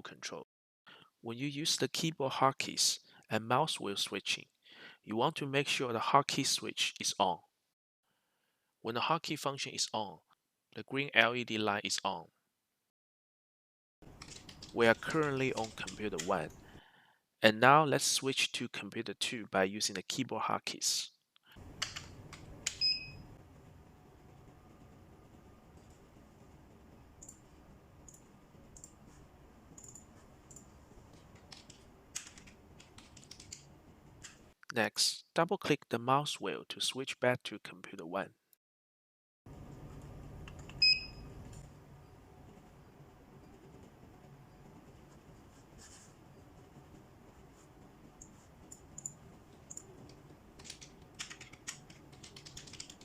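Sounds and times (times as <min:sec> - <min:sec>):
low background hum: 0:14.0 - 0:17.1, 0:39.5 - 0:53.0
keyboard keys clicking: 0:14.2 - 0:16.4, 0:29.8 - 0:33.6, 0:48.2 - 0:53.0.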